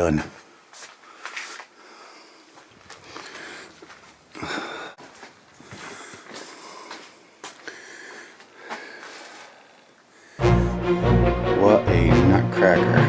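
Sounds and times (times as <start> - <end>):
person breathing and sniffing: 1.0 - 3.8, 5.6 - 10.7.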